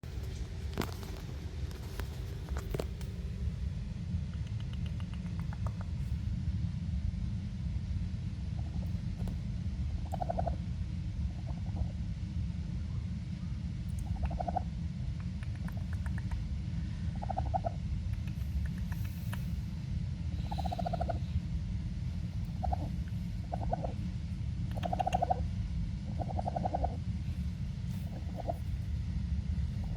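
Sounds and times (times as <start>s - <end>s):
steady low rumble: 0.0s - 29.9s
baby raccoon trilling calls: 8.6s - 12.0s, 13.9s - 19.6s, 20.4s - 21.5s, 22.2s - 29.0s.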